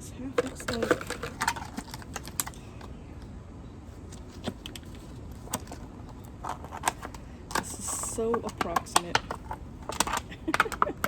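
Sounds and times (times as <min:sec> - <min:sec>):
thin plastic crackling: 0:00.3 - 0:02.9, 0:04.0 - 0:11.0.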